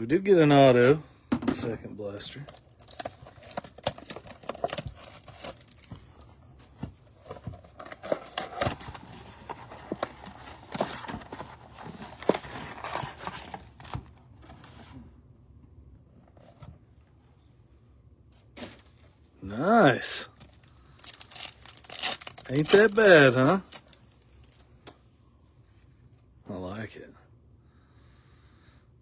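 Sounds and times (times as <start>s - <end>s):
packs being torn open: 2.8s - 5.9s, 20.3s - 24.6s
wrappers crinkling: 2.8s - 5.9s, 20.3s - 24.6s
cards rustling: 7.3s - 14.1s, 19.7s - 24.6s.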